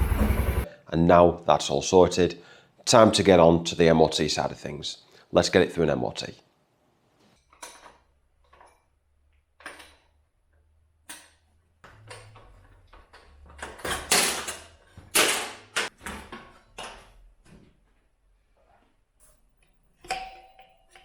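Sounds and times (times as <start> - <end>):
tools knocking and clattering: 11.1 - 17.6.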